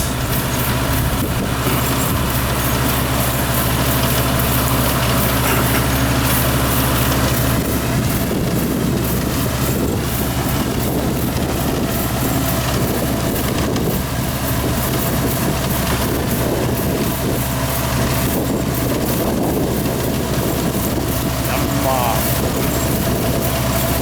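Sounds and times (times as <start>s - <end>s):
clatter of threshing works: 0.0s - 24.0s
combine harvester engine drone: 0.0s - 24.0s.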